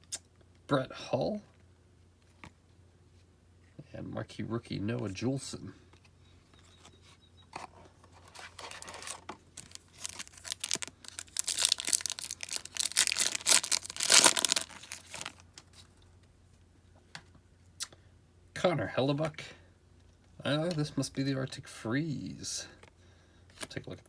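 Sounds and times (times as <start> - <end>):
plastic wrapper tearing and crinkling: 8.4 - 15.8.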